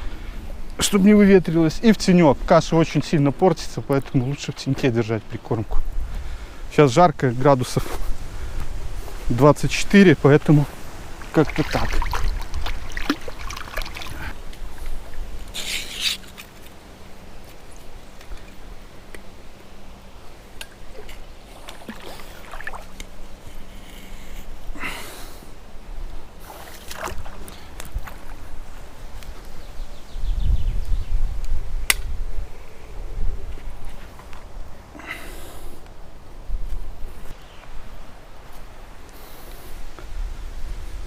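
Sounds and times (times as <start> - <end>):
wind buffeting microphone: 10.6 - 15.4, 27.0 - 34.0.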